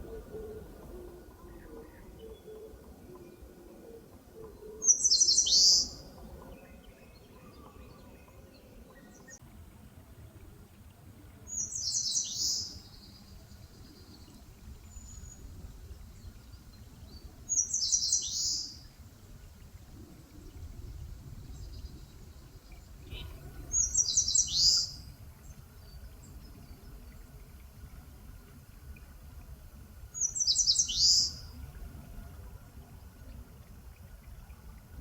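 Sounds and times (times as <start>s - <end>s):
warbler singing: 4.8s - 9.4s, 11.5s - 19.1s, 21.4s - 27.4s, 30.2s - 31.5s.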